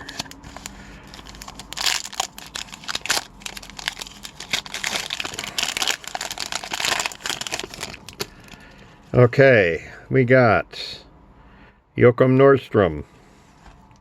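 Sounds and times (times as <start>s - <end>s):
wrapper tearing and crinkling: 0.0s - 8.6s.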